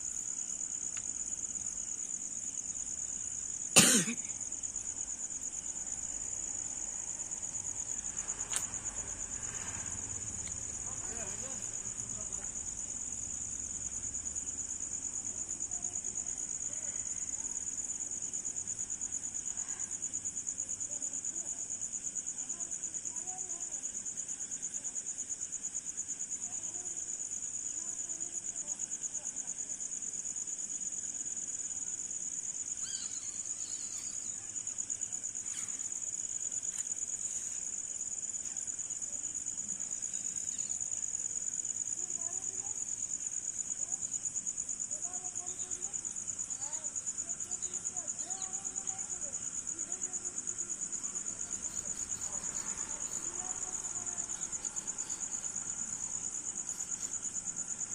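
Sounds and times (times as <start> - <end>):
high-pitched insect trill: 0.0 - 57.9.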